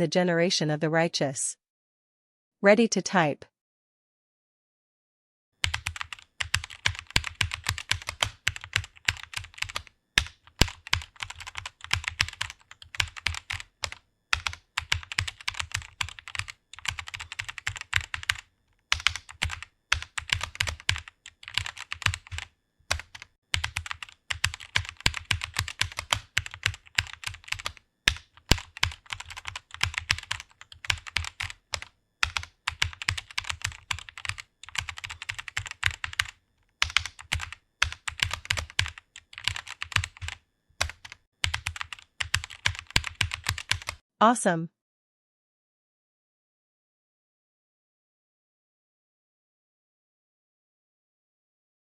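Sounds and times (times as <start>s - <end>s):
fast typing on a keyboard: 5.6s - 44.0s.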